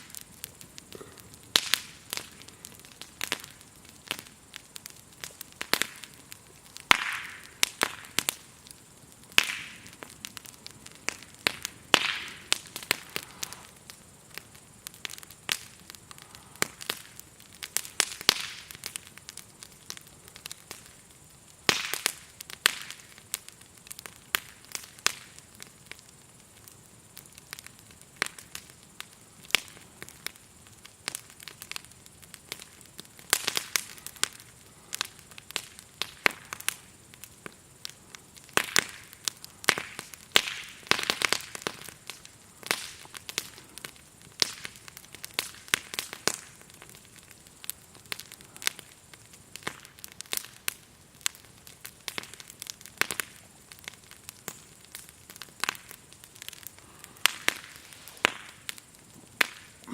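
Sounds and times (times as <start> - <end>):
campfire crackling and popping: 0.0 - 59.9
grasshoppers chirring: 25.5 - 59.9.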